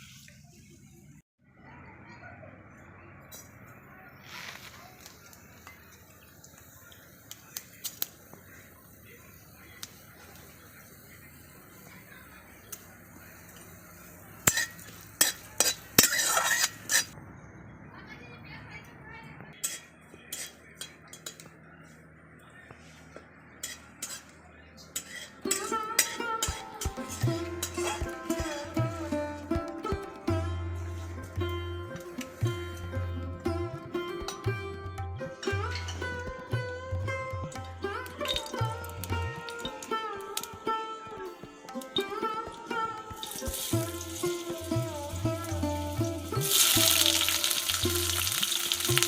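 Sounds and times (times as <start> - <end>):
metal utensils clinking against pot: 14.4 - 17.2, 19.6 - 21.5, 24.9 - 30.2, 34.2 - 40.7, 41.7 - 49.0
plucked-string music: 25.4 - 49.0.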